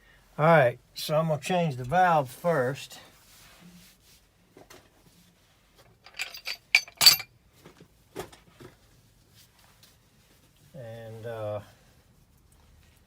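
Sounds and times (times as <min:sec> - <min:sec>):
metal tools clinking: 0:06.0 - 0:07.3.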